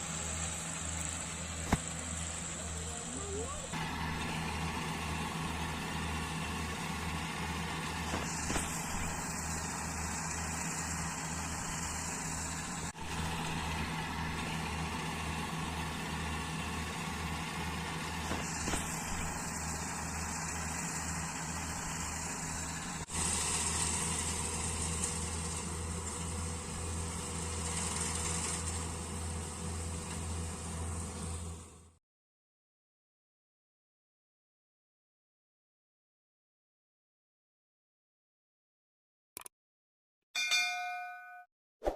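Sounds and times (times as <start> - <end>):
diesel engine running: 0.0 - 32.0.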